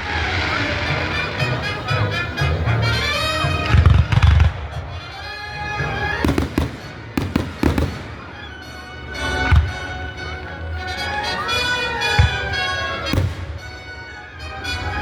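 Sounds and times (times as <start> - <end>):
fireworks bursting: 0.0 - 8.8, 12.1 - 15.0
music: 0.0 - 15.0.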